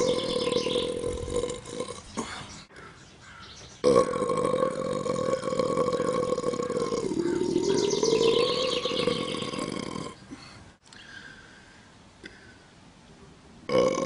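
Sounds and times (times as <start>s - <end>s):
long belch: 0.0s - 2.4s, 3.8s - 10.3s, 13.7s - 14.0s.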